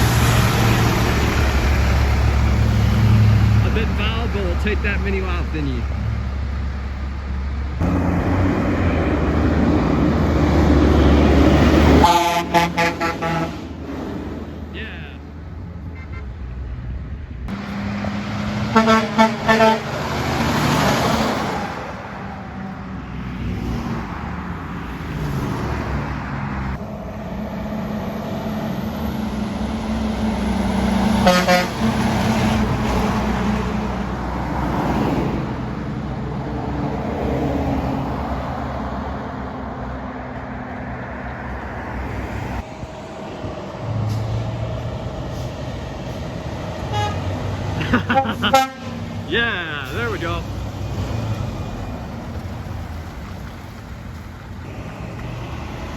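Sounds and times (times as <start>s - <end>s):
trucks passing: 0.0s - 55.9s
truck horn blasts: 12.0s - 13.6s, 15.9s - 16.4s, 18.6s - 20.0s, 31.2s - 32.0s, 46.8s - 49.2s.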